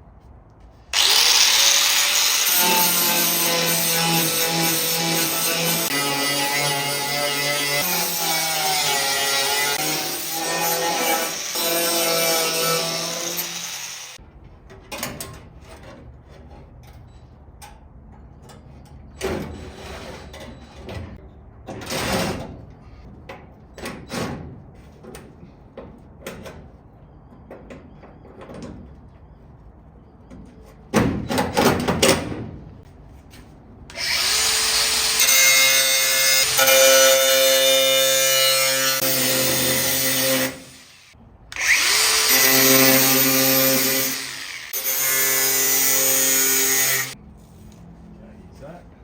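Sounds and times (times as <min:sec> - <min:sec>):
power tool on steel panel: 0:00.9 - 0:14.2, 0:33.9 - 0:47.2
power tool steady whine: 0:01.0 - 0:03.2.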